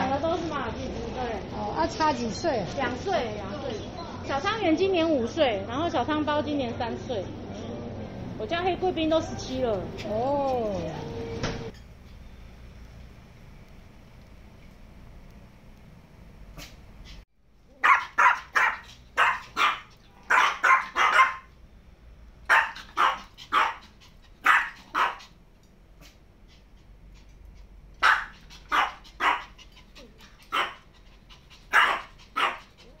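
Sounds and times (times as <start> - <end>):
dog barking: 17.8 - 21.5, 22.5 - 25.3, 28.0 - 29.6, 30.5 - 30.8, 31.7 - 32.8.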